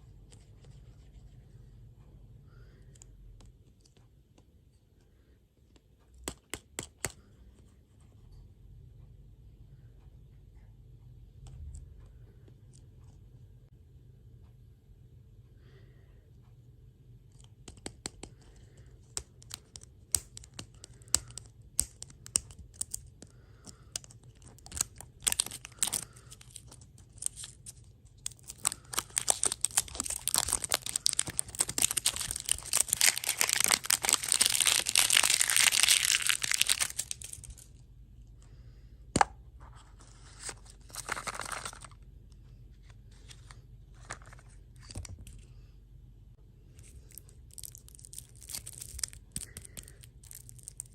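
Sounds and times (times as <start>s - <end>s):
scattered clicks and taps: 5.6s - 7.3s, 17.2s - 32.3s
plastic packaging crinkling and tearing: 24.0s - 37.7s, 40.4s - 42.0s, 46.8s - 50.9s.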